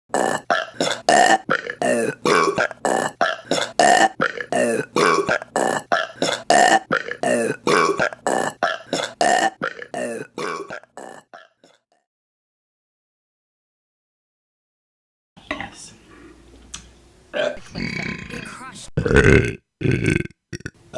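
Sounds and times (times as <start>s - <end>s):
woman burping rapidly: 0.1s - 11.6s, 17.4s - 20.8s.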